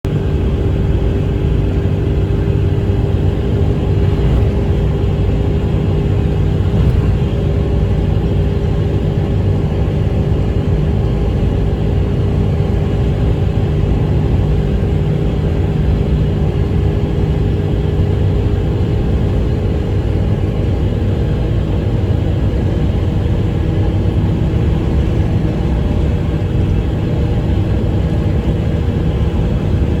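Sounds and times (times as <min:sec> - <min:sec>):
car low droning noise: 0:00.0 - 0:30.0
steady hum: 0:00.1 - 0:18.0.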